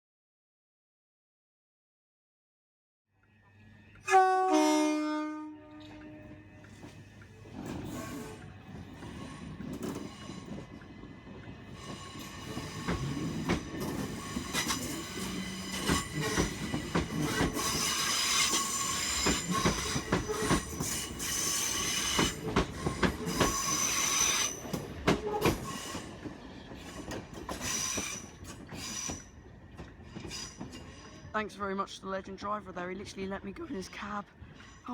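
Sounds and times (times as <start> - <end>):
train wheels squealing and clicking: 5.9 - 31.3.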